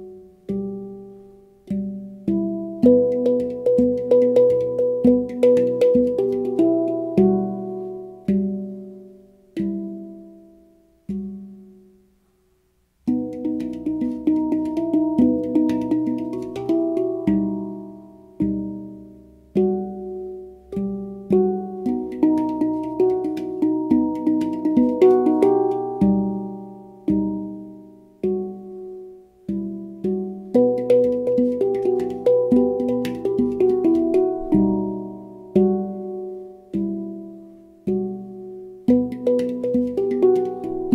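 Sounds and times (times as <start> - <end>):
handpan played by hand: 0.0 - 11.8, 13.0 - 40.9.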